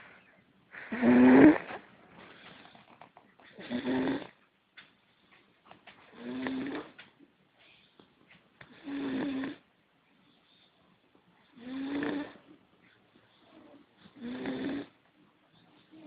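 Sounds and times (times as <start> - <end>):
person snoring: 0.8 - 1.8, 3.6 - 4.4, 6.2 - 6.9, 8.7 - 9.6, 11.6 - 12.4, 14.1 - 15.0.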